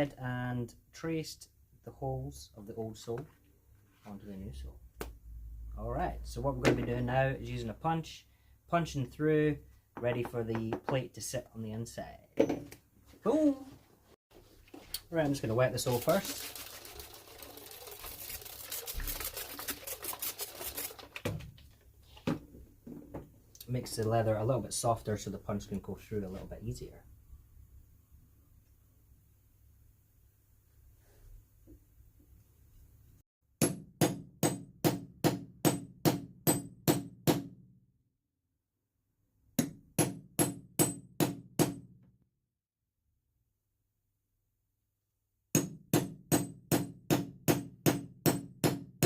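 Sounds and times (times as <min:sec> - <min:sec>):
mallet striking hole punch: 0:33.6 - 0:37.6, 0:39.6 - 0:41.9, 0:45.6 - 0:49.0.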